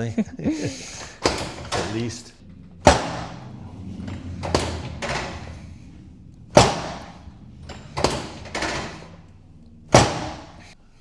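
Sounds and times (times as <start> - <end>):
drop table section snapping down: 2.8 - 5.8, 6.5 - 9.3, 9.9 - 10.8.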